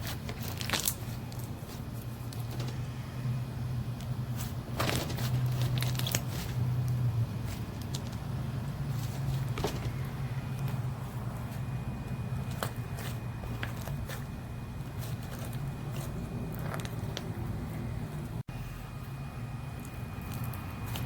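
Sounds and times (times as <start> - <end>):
hands squishing slime: 0.0 - 2.5, 4.0 - 9.6
low hum: 0.6 - 21.0.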